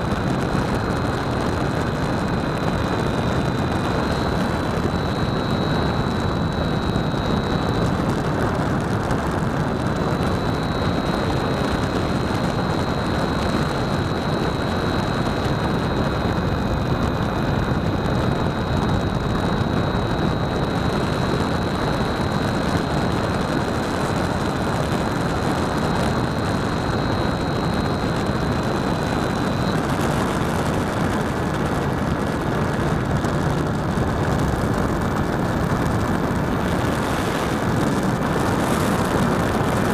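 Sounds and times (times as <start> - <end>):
propeller motor whine: 0.0 - 39.9
wind rushing over microphone: 0.0 - 39.9.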